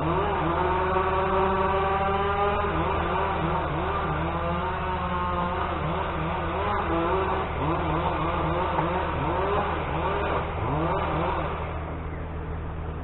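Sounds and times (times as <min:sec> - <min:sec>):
distant chainsaws revving: 0:00.0 - 0:12.0
steady low drone: 0:00.0 - 0:13.0.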